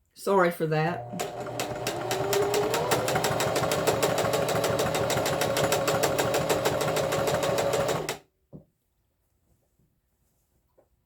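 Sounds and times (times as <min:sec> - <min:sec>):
electric sewing machine stitching: 0:00.9 - 0:08.2.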